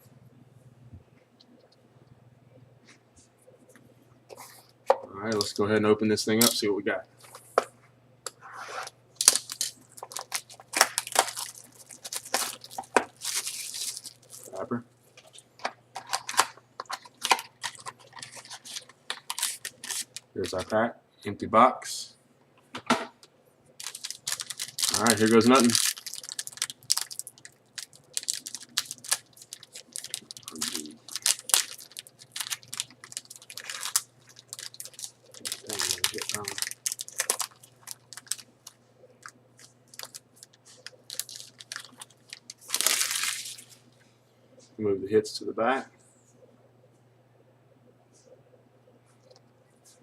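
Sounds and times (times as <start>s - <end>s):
plastic shrink-wrap crinkling and tearing: 9.2s - 15.4s, 16.0s - 20.7s, 23.8s - 43.8s.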